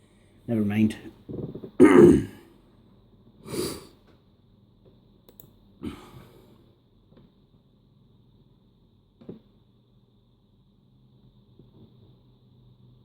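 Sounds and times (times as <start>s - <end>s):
faint steady hum: 0.0s - 13.0s
person sighing heavily: 1.8s - 2.5s, 3.5s - 3.9s, 5.8s - 6.5s.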